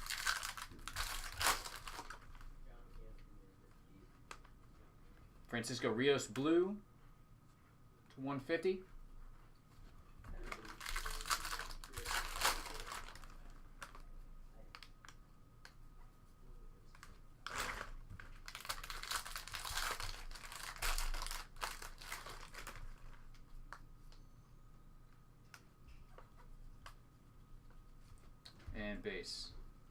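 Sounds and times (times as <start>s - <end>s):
wrapper crinkling and tearing: 0.0s - 2.4s, 10.5s - 14.0s, 17.4s - 23.0s.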